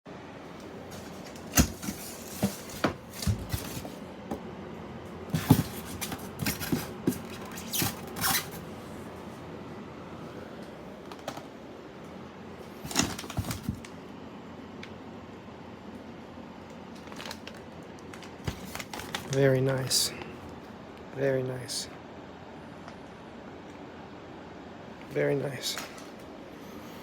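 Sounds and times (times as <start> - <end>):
packaging being handled: 0.9 - 4.0, 5.3 - 8.6, 12.8 - 13.9, 17.0 - 19.4.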